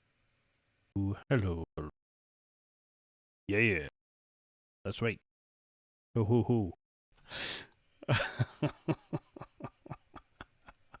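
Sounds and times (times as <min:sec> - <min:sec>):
man laughing: 0:06.2 - 0:06.8, 0:08.0 - 0:11.0.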